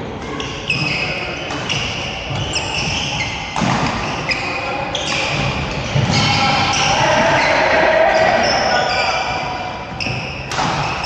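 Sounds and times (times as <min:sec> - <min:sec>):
shoes squeaking on court: 0:00.2 - 0:11.0
racket hitting shuttlecock: 0:00.7 - 0:06.9, 0:10.0 - 0:11.0.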